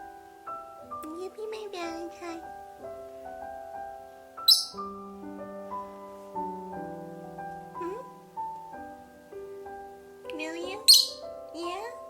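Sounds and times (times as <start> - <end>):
soft piano music: 0.0 - 12.0
bird chirping loudly: 4.4 - 5.0, 10.6 - 11.4.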